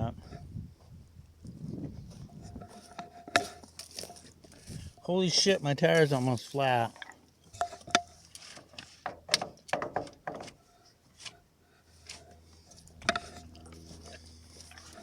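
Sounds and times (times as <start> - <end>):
low steady engine hum: 0.0 - 15.0
sharp knocks and clatters: 7.5 - 10.6.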